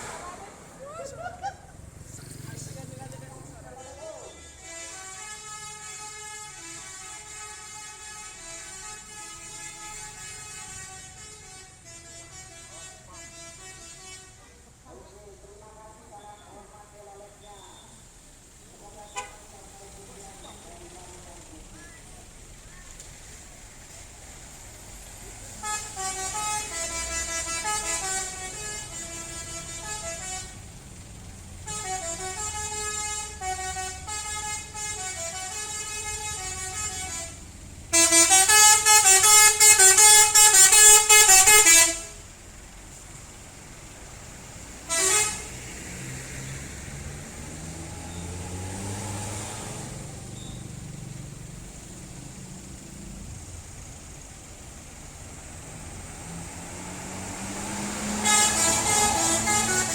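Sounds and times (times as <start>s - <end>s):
bus musical horn tune: 4.6s - 14.4s, 25.6s - 30.8s, 31.6s - 42.3s, 44.8s - 45.6s, 57.7s - 59.9s.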